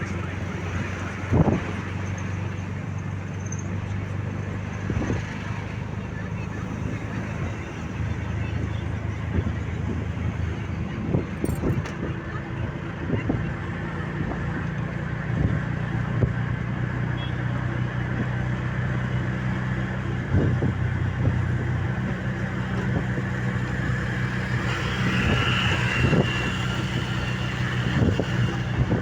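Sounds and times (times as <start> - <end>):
tyre and road noise: 0.0 - 29.0
vehicle engine running: 0.0 - 29.0.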